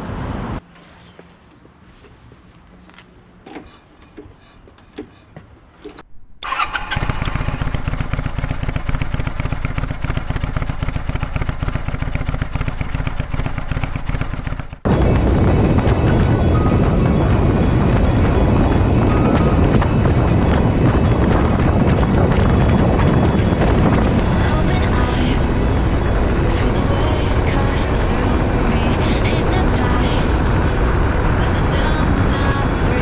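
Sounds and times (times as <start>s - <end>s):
motorcycle engine running: 6.4s - 16.2s, 21.0s - 32.0s.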